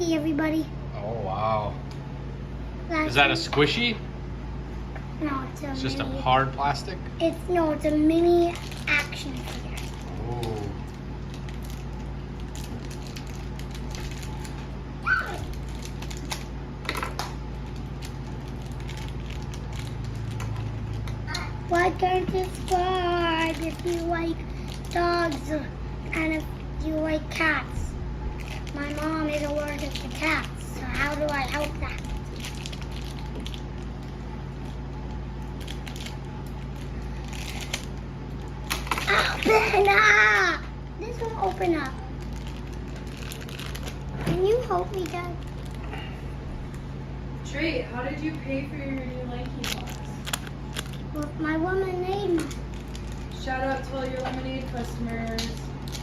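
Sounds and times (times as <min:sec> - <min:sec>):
steady low hum: 0:00.0 - 0:56.0
plastic package clicks and rustles: 0:10.9 - 0:25.4, 0:28.4 - 0:34.8, 0:35.4 - 0:40.0, 0:41.2 - 0:45.9, 0:49.4 - 0:51.3, 0:52.2 - 0:53.4
plastic toy and packaging handled: 0:41.4 - 0:45.8.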